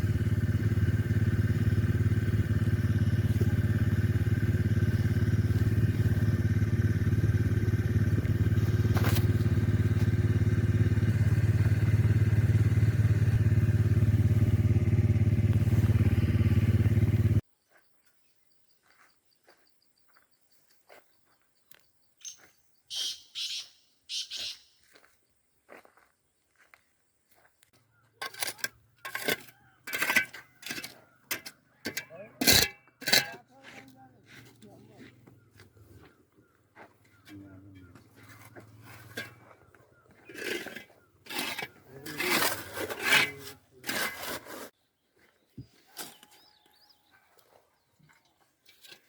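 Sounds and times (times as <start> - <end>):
engine running steadily: 0.0 - 17.4
short high chirps: 22.2 - 24.7.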